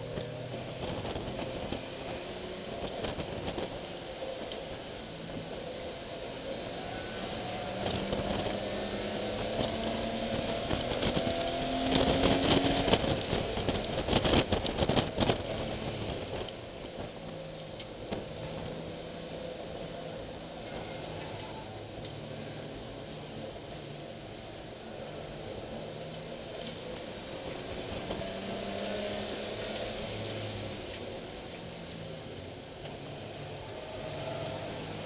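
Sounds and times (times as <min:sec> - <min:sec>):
car engine revving under load: 0:00.0 - 0:35.0.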